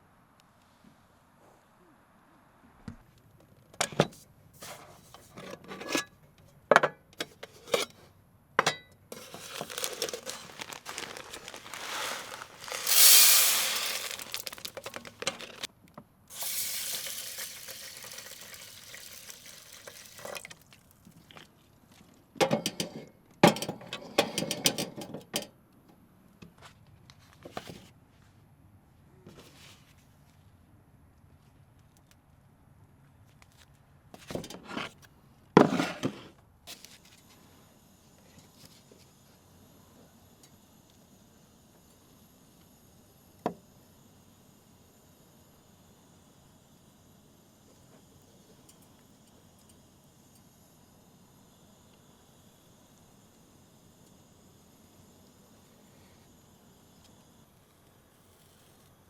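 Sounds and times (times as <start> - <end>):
hissing noise: 9.4 - 15.7
clicks and clatter of handling: 14.0 - 15.7.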